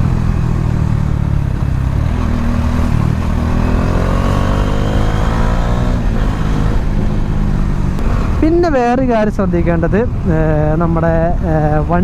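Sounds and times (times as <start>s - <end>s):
motorcycle engine accelerating: 0.0s - 8.5s.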